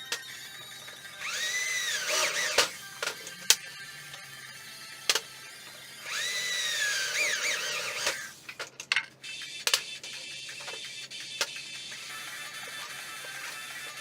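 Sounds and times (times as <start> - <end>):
power drill whining: 1.1 - 3.3, 5.5 - 8.4.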